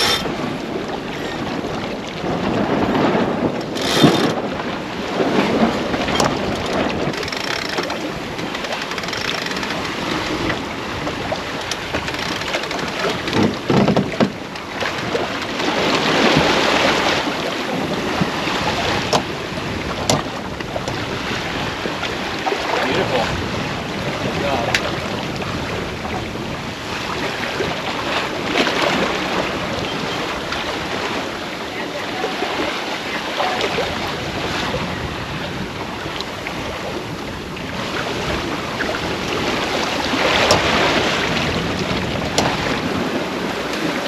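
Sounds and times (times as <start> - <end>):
sharp clicks or knocks: 0.0 - 0.3, 3.6 - 4.4, 6.2 - 10.4, 40.5 - 40.7
wind and water rushing: 0.0 - 44.0
wind buffeting microphone: 0.0 - 44.0.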